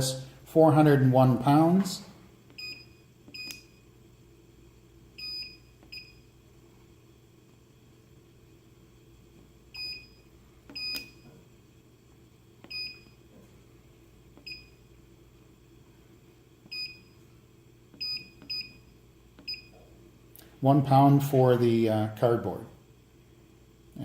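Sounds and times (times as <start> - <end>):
faint steady hum: 0.0 - 24.0.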